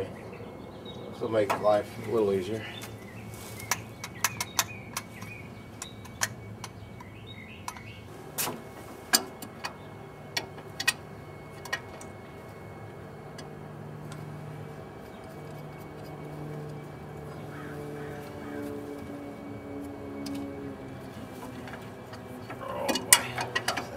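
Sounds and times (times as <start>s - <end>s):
metal tools clinking on engine parts: 2.7s - 8.0s, 21.4s - 23.9s.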